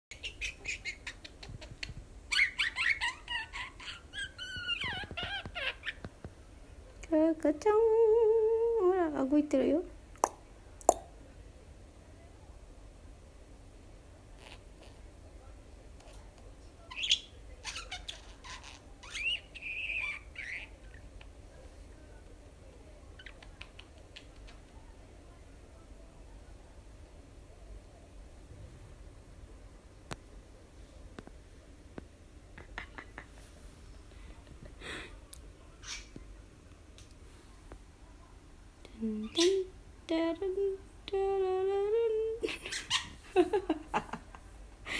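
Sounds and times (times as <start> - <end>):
budgerigar chattering: 0.1 - 1.7, 2.3 - 6.0, 16.9 - 20.8.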